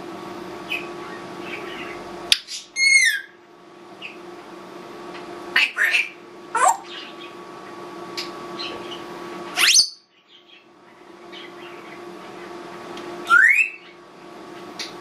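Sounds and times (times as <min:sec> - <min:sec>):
steady background hum: 0:00.0 - 0:15.0
parrot whistling: 0:02.8 - 0:03.4, 0:09.6 - 0:10.1, 0:13.2 - 0:13.9.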